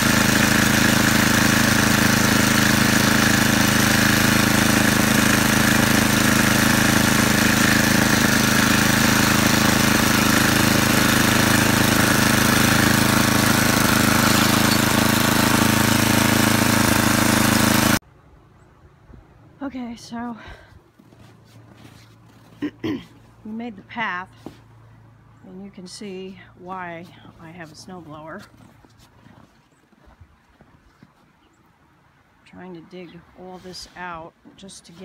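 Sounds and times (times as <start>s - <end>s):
snowblower engine running: 0.0s - 18.0s.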